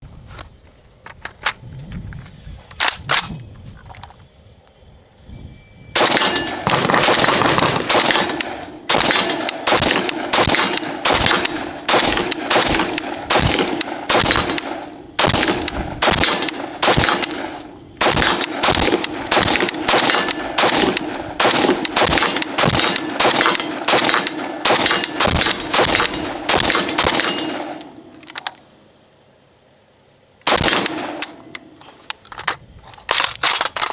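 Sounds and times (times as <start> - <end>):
rifle shots: 6.0 - 28.1, 30.5 - 31.5.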